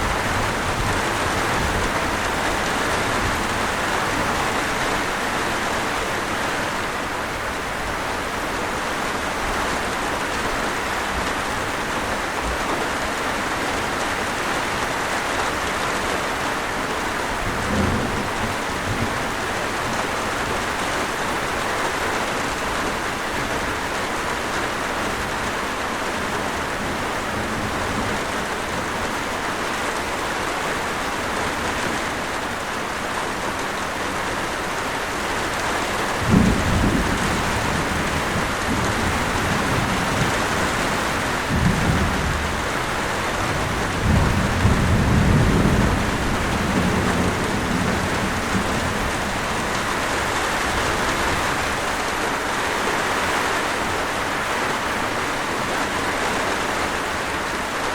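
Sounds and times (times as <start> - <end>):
low rumble of thunder: 0.0 - 5.4, 17.4 - 21.0, 36.0 - 51.9
steady rain pouring: 0.0 - 57.9.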